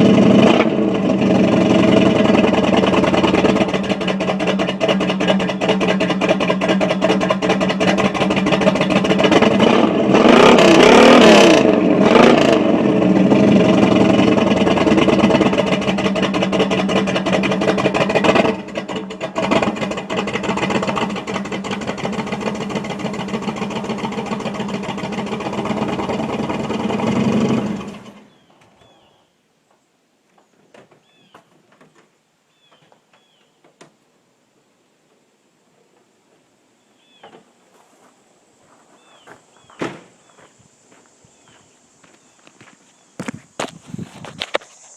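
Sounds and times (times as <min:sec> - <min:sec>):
car engine running and revving: 0:00.0 - 0:28.2.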